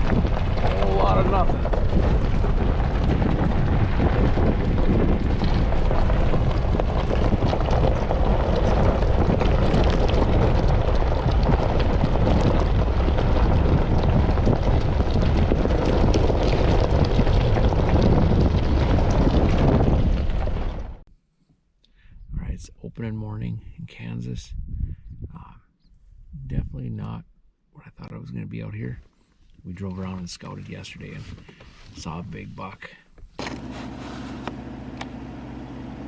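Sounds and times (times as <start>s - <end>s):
wind buffeting microphone: 0.0s - 21.0s, 23.6s - 26.8s.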